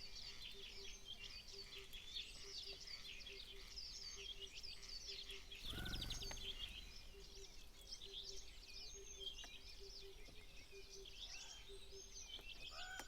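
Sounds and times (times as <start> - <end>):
songbirds chirping: 0.0 - 13.0
low pulsing note: 5.7 - 7.0.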